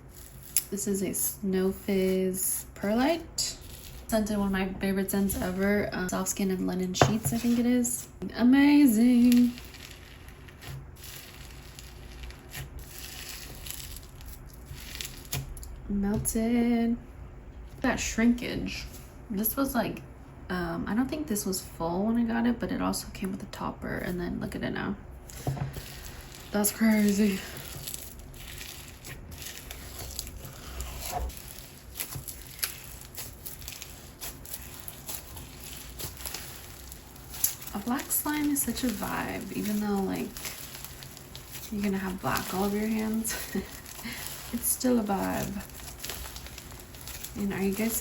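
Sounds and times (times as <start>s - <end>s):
slime crackling and crunching: 0.0s - 0.8s, 1.7s - 15.7s, 25.3s - 48.0s.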